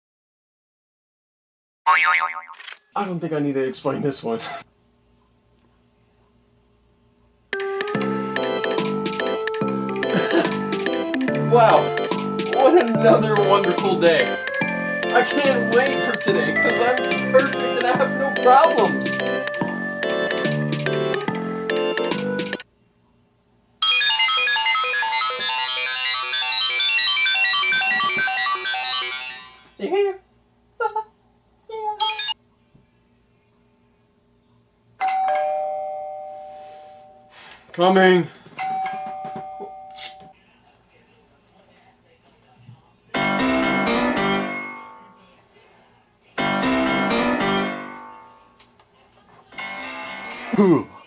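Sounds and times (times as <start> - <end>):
phone alarm melody: 7.6 - 22.6, 23.8 - 29.8, 32.0 - 32.4
piano-like phone alarm chime: 23.8 - 29.8, 35.1 - 37.4, 38.6 - 40.3.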